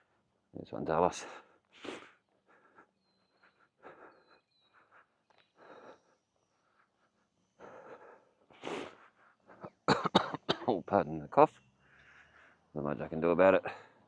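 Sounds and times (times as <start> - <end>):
man breathing and sniffing heavily: 1.2 - 9.9, 11.8 - 12.7.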